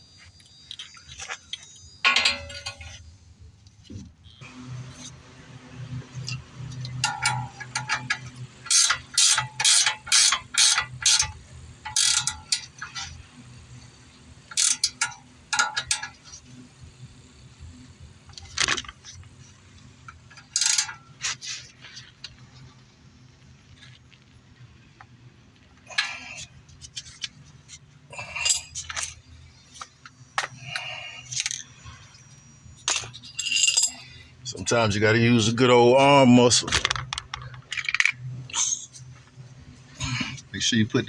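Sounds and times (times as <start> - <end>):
ratchet wrench clicking: 6.2 - 13.2, 14.4 - 16.5, 20.0 - 21.3, 28.4 - 31.7.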